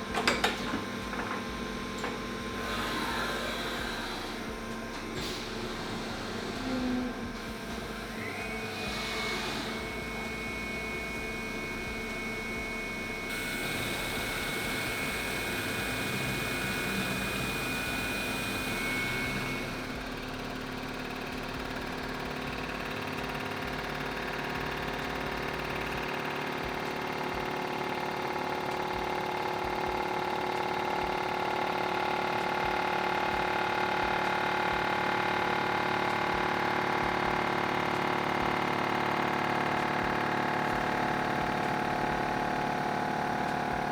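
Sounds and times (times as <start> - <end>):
machine whine: 0.0 - 43.9.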